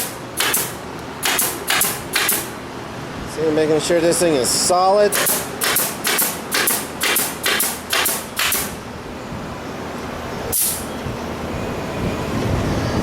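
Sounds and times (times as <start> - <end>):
nail gun firing with air hiss: 0.0 - 2.6, 5.1 - 8.8, 10.5 - 10.9.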